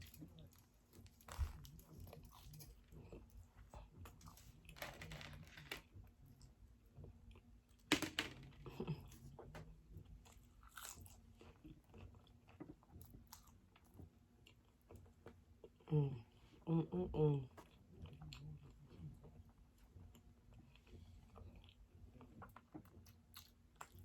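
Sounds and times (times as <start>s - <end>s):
person chewing food: 8.8s - 15.9s, 17.5s - 24.0s.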